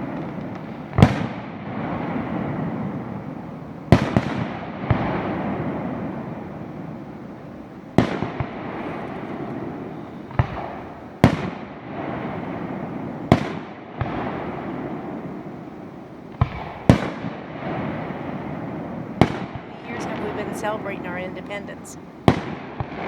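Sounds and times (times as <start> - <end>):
fireworks bursting: 19.7 - 22.0.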